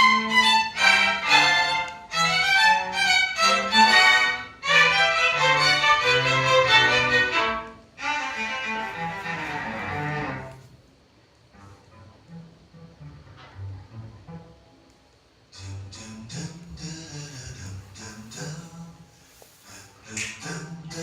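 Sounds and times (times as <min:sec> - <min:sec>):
bowed violin-like melody: 0:00.0 - 0:10.7.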